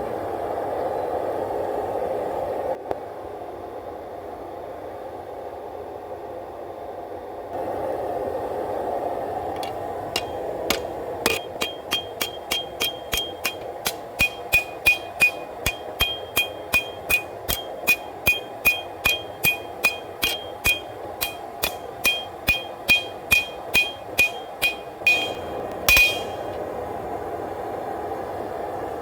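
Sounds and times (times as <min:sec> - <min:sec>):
hammer striking metal on anvil: 0:09.5 - 0:26.7
steady rush: 0:09.6 - 0:26.7.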